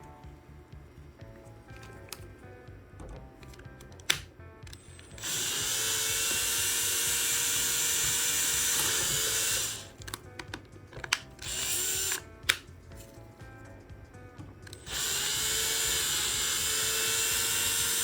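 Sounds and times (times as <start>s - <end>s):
clicks: 3.0s - 6.6s, 8.2s - 12.7s
electric drill running: 4.1s - 10.0s, 11.1s - 12.6s, 14.7s - 18.0s.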